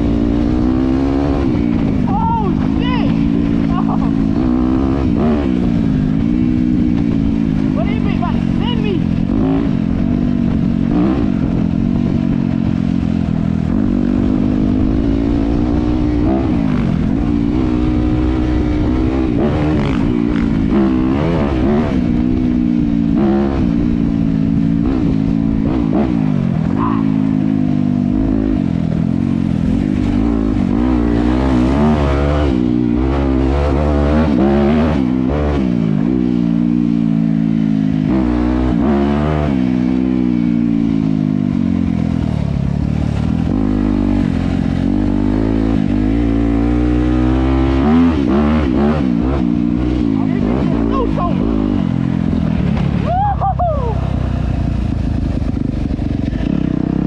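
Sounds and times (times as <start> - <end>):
dirt bike engine revving: 0.0 - 57.0.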